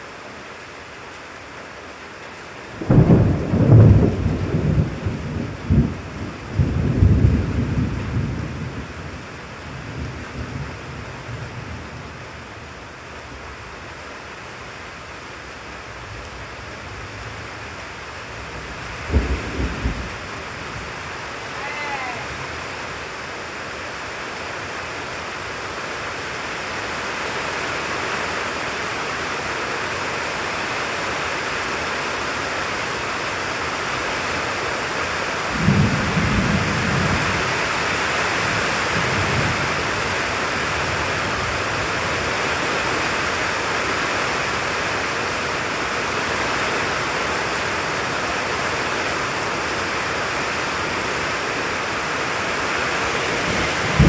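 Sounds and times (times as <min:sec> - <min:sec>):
heavy rain falling: 0:00.0 - 0:54.0
thunder rumbling: 0:02.8 - 0:09.2, 0:18.6 - 0:21.0, 0:35.5 - 0:42.3, 0:53.2 - 0:54.0.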